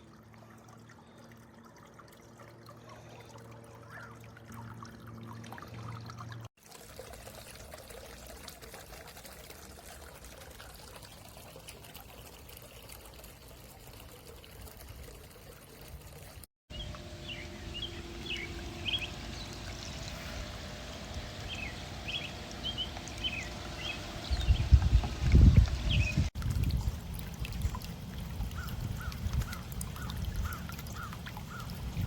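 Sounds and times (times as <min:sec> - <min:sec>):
fountain water splashing: 0:06.6 - 0:32.0.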